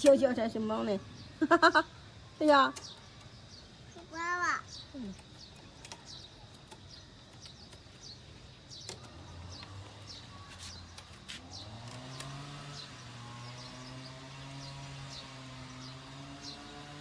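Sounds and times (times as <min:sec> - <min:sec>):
small birds chirping: 0:00.0 - 0:17.0
low motor hum: 0:08.7 - 0:17.0.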